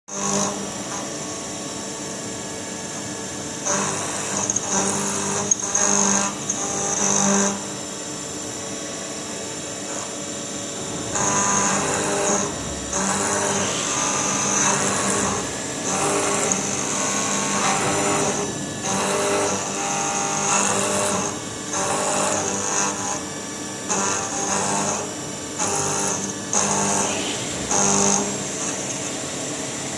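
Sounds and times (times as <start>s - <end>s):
machine whine with cutting noise: 0.1s - 29.9s.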